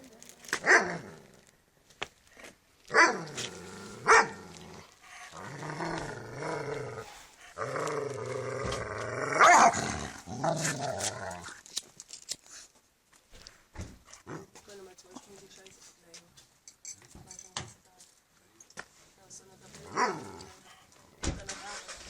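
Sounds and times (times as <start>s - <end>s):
dog barking: 2.9s - 3.4s, 4.0s - 4.4s, 9.4s - 9.8s
dog play-growling: 3.2s - 11.6s.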